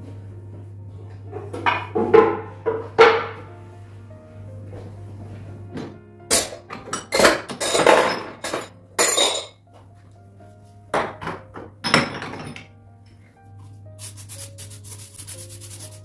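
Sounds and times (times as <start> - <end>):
quiet background music: 0.0 - 16.0
dishes and cutlery clattering: 6.3 - 9.6, 11.1 - 12.7.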